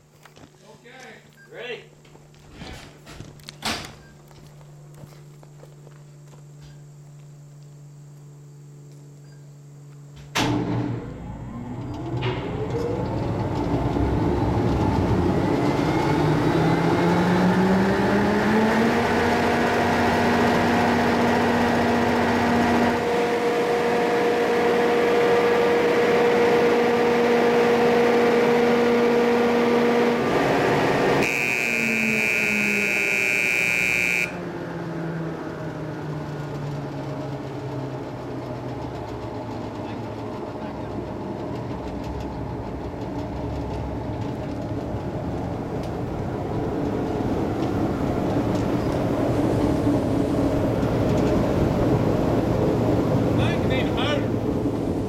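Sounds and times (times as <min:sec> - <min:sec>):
motor switching on clunk: 0:10.1 - 0:13.7
ventilation fan motor humming: 0:18.8 - 0:31.7
loud high buzzing tone: 0:21.2 - 0:34.5.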